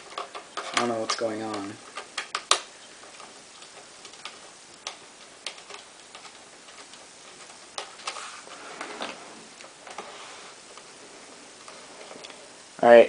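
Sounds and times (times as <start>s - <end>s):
small clicks and taps: 0.0s - 10.1s
clicking and scraping: 0.0s - 12.7s.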